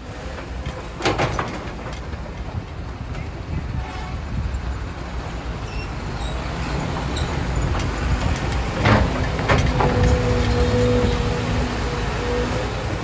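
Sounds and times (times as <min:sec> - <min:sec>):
diesel machinery rumbling: 0:00.0 - 0:13.0
metallic clanks: 0:00.3 - 0:02.4, 0:07.0 - 0:11.6.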